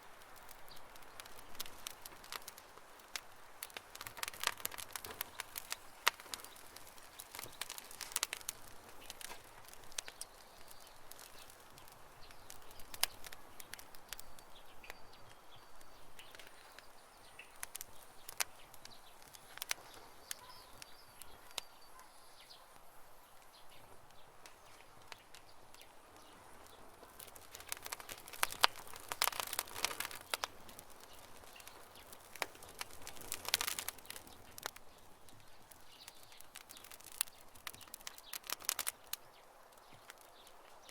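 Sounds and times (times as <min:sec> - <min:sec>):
campfire crackling and popping: 0:00.0 - 0:40.9
bird chirps: 0:14.2 - 0:22.8.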